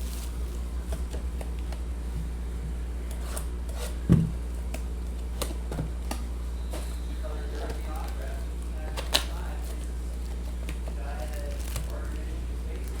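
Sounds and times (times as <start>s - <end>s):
low electrical hum: 0.0s - 13.0s
cards rustling: 6.8s - 13.0s.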